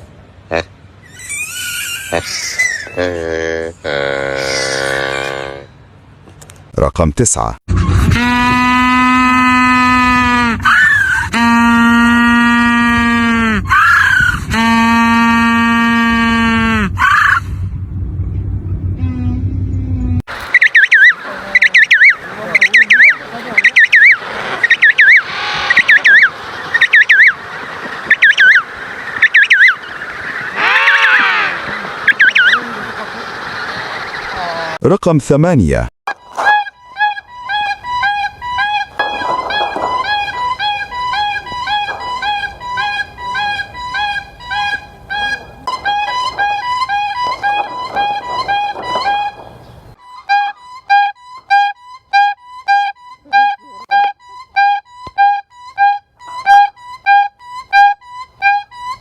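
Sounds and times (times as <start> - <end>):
longer lower arching call: 8.0 - 17.6, 19.0 - 34.8, 36.1 - 59.0
background noise: 20.0 - 59.0
animal whistled calls: 20.4 - 34.8, 36.5 - 50.6.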